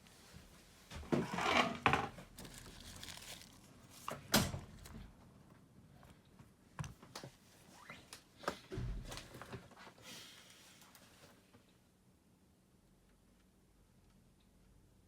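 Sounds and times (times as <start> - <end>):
tools scraping and rustling: 1.0 - 5.0.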